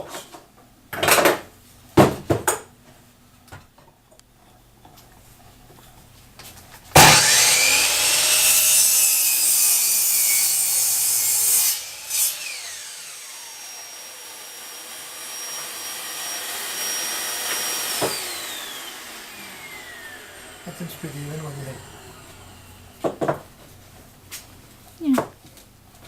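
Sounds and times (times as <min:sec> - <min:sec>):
saw cutting wooden board: 0:06.9 - 0:23.4
electric saw motor whining: 0:07.0 - 0:23.0.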